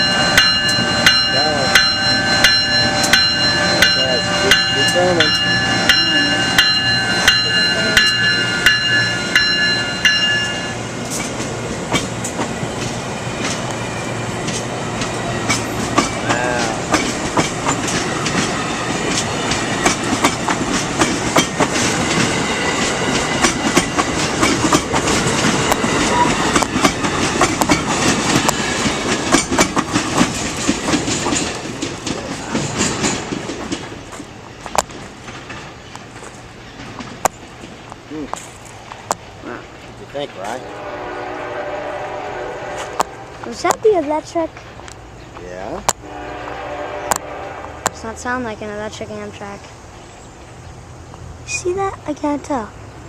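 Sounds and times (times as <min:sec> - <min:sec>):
train wheels clattering over rail joints: 0:00.0 - 0:40.6
train horn short blasts: 0:40.5 - 0:43.5, 0:46.0 - 0:48.0.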